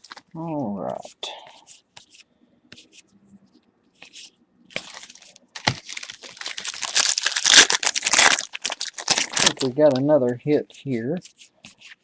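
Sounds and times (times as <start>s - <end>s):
card pack wrapper tearing and crinkling: 4.8s - 10.0s.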